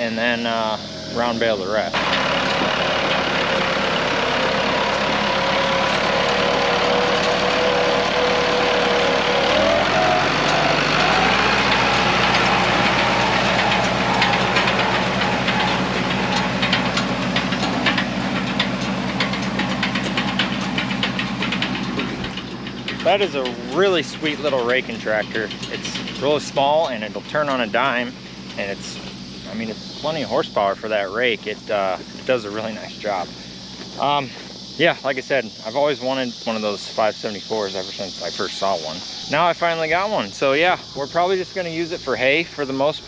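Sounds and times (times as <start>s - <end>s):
tractor engine running: 0.0s - 43.0s
light rattling: 0.8s - 34.8s.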